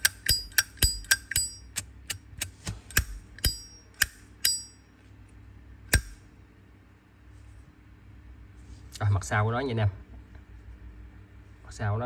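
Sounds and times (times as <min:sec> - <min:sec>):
lighter flint wheel clicking: 0:00.0 - 0:04.6.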